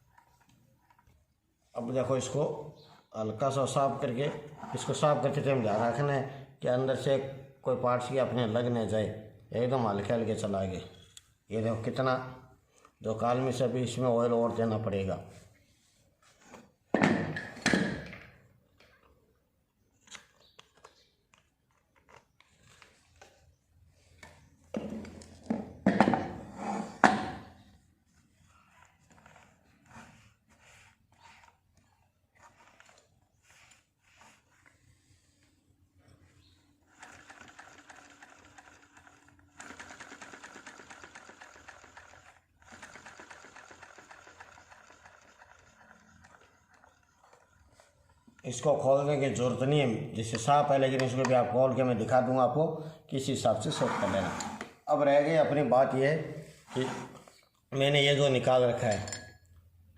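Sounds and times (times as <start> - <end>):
sewing machine running: 36.9 - 47.7.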